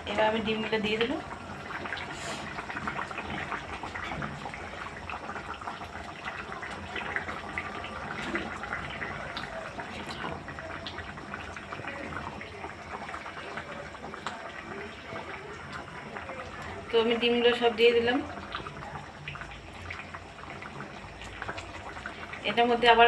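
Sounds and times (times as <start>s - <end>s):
gravy bubbling in a pan: 0.0s - 23.0s.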